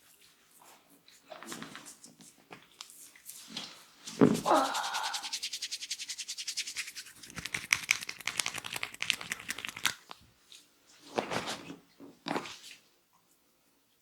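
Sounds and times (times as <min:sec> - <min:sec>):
hands rubbing hair and scalp: 0:04.2 - 0:10.2.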